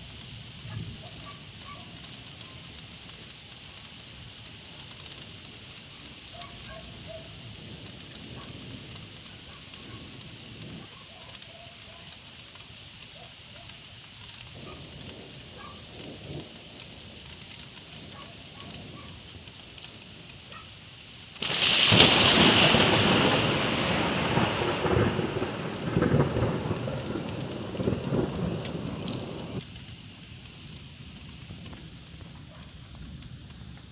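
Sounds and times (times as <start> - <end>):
steady rain: 0.0 - 33.9
rumbling thunderclap: 21.4 - 29.7.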